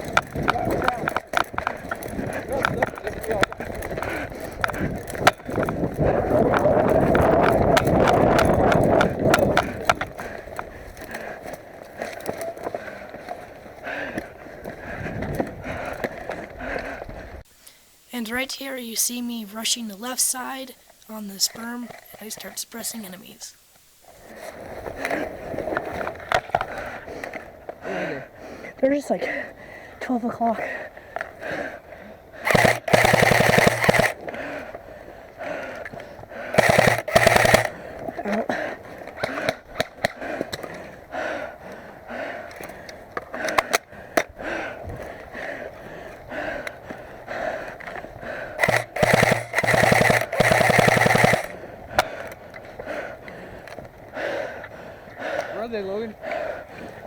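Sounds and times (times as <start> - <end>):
airsoft rifle full-auto bursts: 0.0 - 10.4, 32.4 - 34.2, 36.4 - 37.9, 48.3 - 52.1
sharp clicks: 0.0 - 14.4, 32.4 - 34.8, 35.4 - 40.9, 42.4 - 44.4, 47.6 - 53.9
rattling gear: 0.0 - 17.4, 30.4 - 57.0
running footsteps: 0.0 - 57.0.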